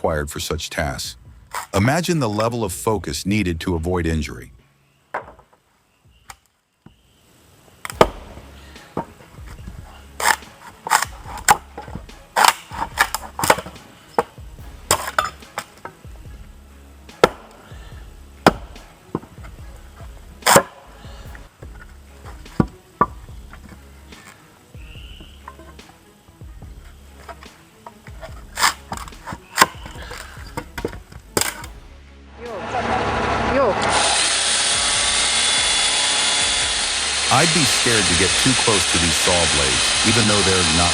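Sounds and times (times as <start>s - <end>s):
background music with low beat: 0.0s - 6.3s, 7.9s - 40.9s
wood being chopped: 7.9s - 15.9s, 17.1s - 17.6s, 18.4s - 19.6s, 20.2s - 20.8s, 27.3s - 31.8s.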